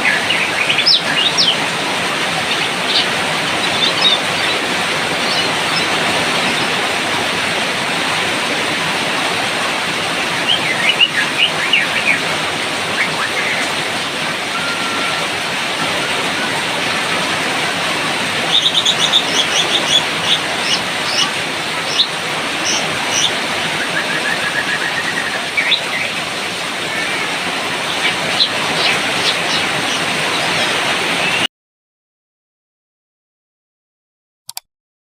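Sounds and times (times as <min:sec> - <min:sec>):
bird singing: 0:00.0 - 0:01.6, 0:02.4 - 0:06.7, 0:10.5 - 0:12.2, 0:18.5 - 0:26.2
rain hiss: 0:00.0 - 0:31.4.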